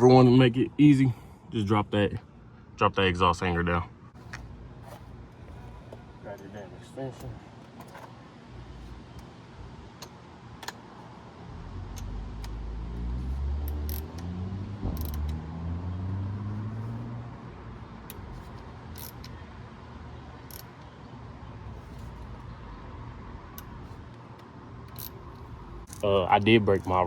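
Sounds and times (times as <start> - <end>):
ratchet clicking: 13.6 - 14.3, 14.9 - 15.4, 18.9 - 19.4, 20.5 - 20.8, 24.9 - 25.2.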